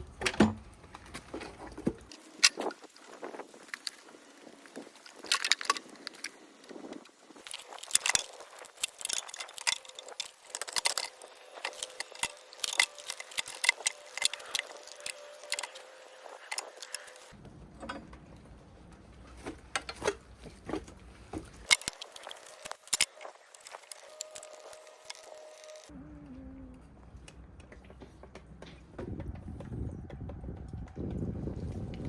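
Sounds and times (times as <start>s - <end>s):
low hum: 25.8s - 32.0s
hand tools clicking and tapping: 27.1s - 31.7s.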